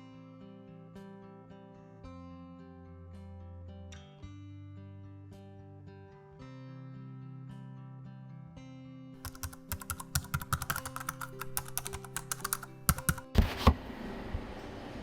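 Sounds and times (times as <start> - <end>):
rapid sharp clicks: 9.2 - 13.4
soft background music: 9.2 - 13.7.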